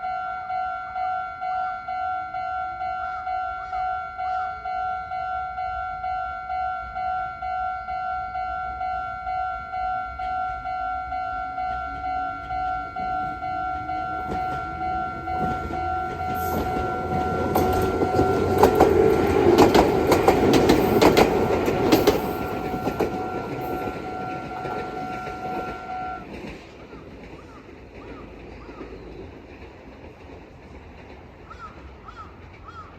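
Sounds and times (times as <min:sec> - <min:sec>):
level crossing bell dinging: 0:00.0 - 0:26.3
train motor whine: 0:05.3 - 0:26.5
train wheels clattering: 0:11.7 - 0:32.9.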